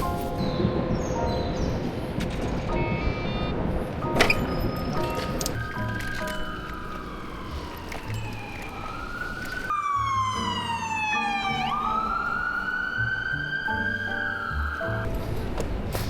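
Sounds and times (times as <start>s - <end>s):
background music: 0.0s - 16.0s
emergency siren wailing: 5.1s - 15.1s.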